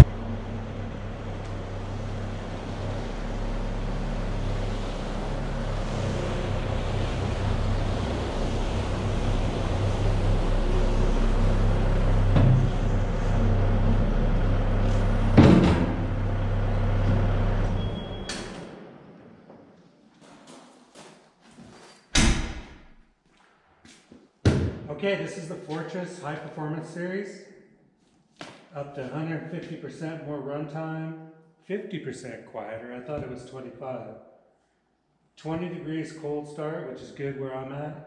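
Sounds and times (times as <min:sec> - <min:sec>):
low engine hum: 0:00.0 - 0:19.6
road and tyre noise: 0:00.0 - 0:20.3.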